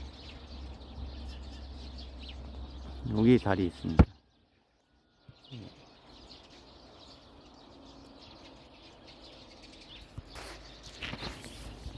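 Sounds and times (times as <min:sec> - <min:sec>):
faint bird chirps: 0:00.0 - 0:11.9
brief rustle: 0:10.1 - 0:11.9.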